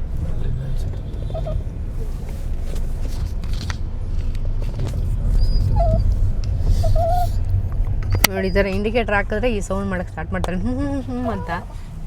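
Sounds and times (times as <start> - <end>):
car road rumble: 0.0 - 12.0
dog whimpering: 1.3 - 1.6, 5.4 - 7.4, 11.1 - 11.8.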